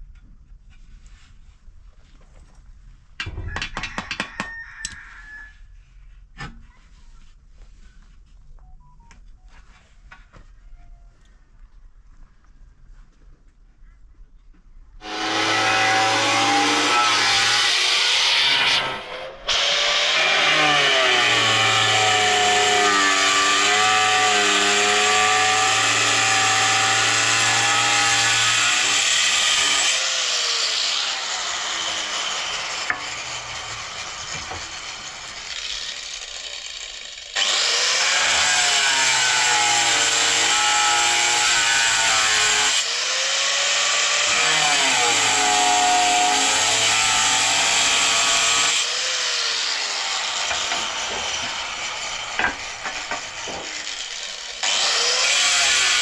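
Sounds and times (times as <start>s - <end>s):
power tool running under load: 15.0s - 56.0s.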